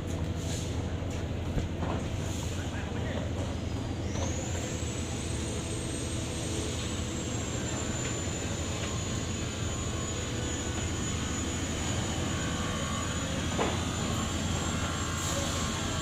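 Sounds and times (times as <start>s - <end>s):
machinery rumble: 0.0s - 16.0s
thin high whine: 4.1s - 16.0s.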